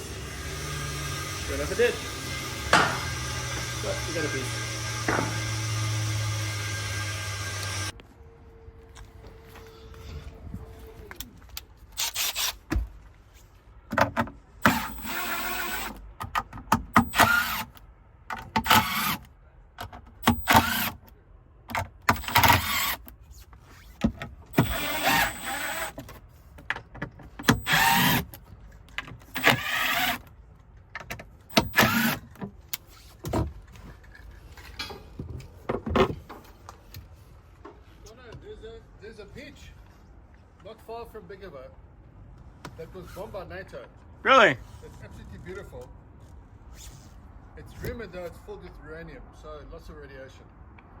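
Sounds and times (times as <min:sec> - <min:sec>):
power tool bursts: 0:00.0 - 0:07.9, 0:12.0 - 0:12.6, 0:14.6 - 0:16.0, 0:17.0 - 0:17.8, 0:18.6 - 0:19.2, 0:20.2 - 0:21.0, 0:22.1 - 0:23.0, 0:24.6 - 0:26.0, 0:27.4 - 0:28.3, 0:29.3 - 0:30.2, 0:31.5 - 0:32.2
knocks and clatter: 0:02.6 - 0:03.7, 0:05.0 - 0:05.7.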